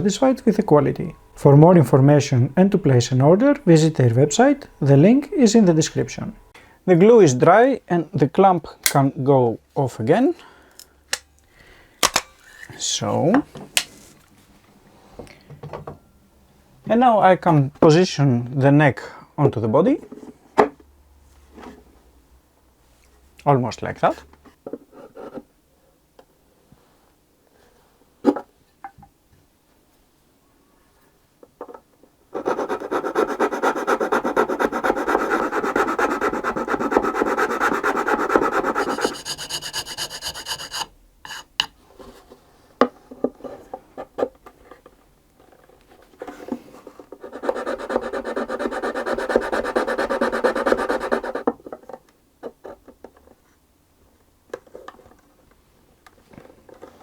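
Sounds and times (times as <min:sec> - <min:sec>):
hand tool rasping on wood: 0:32.4 - 0:41.4, 0:47.3 - 0:51.4.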